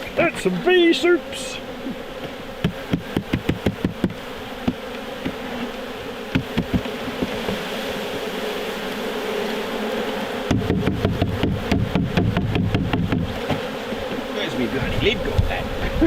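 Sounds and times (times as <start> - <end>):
honey bees buzzing: 0.0 - 16.0
sharp knocks: 2.2 - 5.4, 6.3 - 7.6, 10.4 - 14.2.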